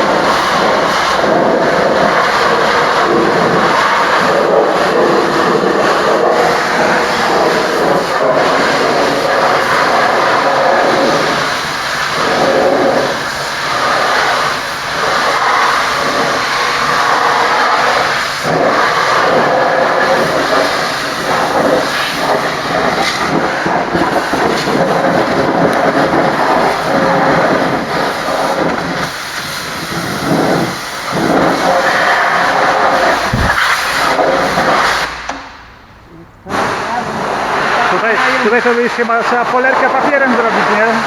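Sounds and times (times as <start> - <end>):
pressure washer jet spraying: 0.0 - 35.8, 36.4 - 41.0.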